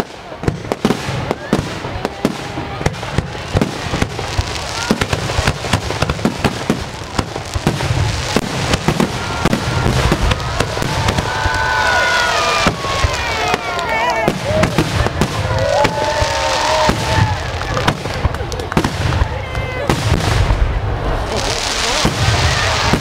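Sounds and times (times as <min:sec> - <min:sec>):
drawn-out firework tones: 0:00.0 - 0:23.0
fireworks bangs and pops: 0:00.0 - 0:23.0.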